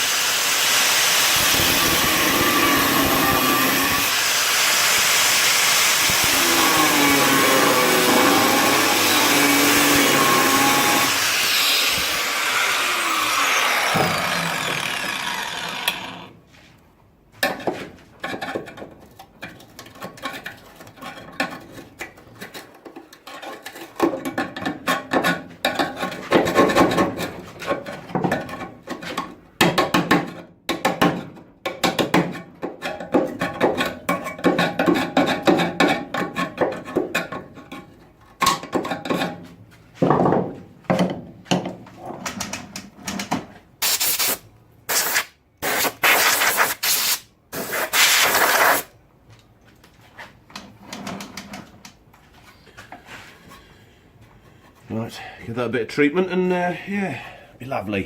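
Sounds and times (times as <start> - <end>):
power tool spinning down: 0.0 - 16.3.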